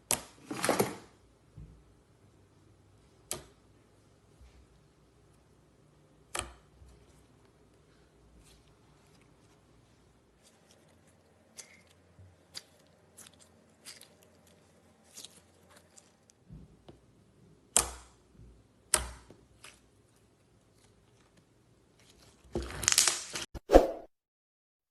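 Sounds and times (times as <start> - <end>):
crackling squish of slime: 6.3 - 16.5, 19.4 - 23.5.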